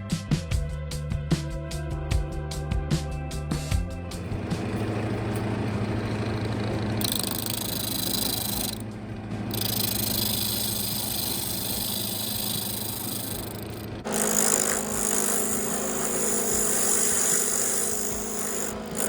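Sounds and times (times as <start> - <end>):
wood lathe motor running: 4.1 - 19.0
tool hissing cutting wood: 5.7 - 19.0.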